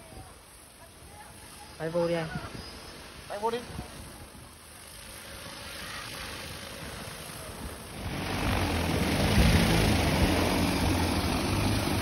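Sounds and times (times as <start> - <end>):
drone rotors humming: 0.0 - 12.0.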